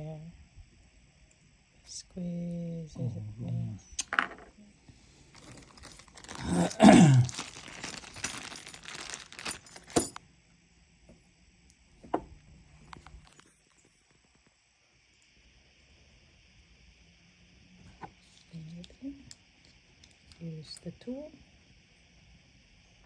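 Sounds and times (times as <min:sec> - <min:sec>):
metal parts and tool rattling: 0:05.3 - 0:10.2.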